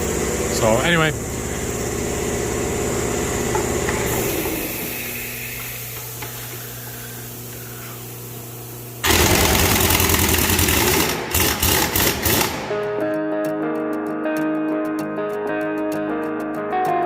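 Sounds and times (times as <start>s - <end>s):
low machine hum: 0.0s - 13.0s
pneumatic impact wrench hammering: 3.2s - 8.0s, 9.0s - 13.0s.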